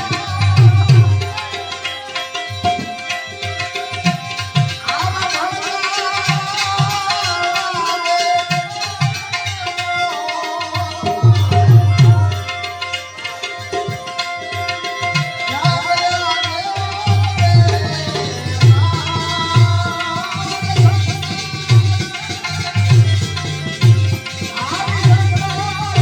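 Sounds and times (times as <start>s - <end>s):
hand drums rhythm: 0.0s - 1.7s, 10.8s - 12.9s, 17.0s - 26.0s.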